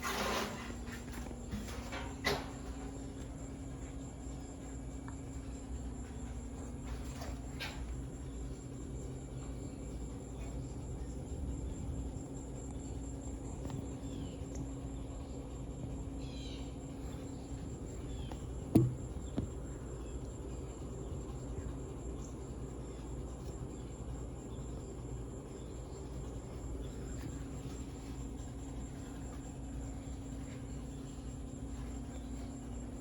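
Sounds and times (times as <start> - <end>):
ceiling fan motor humming: 0.0 - 33.0
sharp knocks: 18.3 - 19.6.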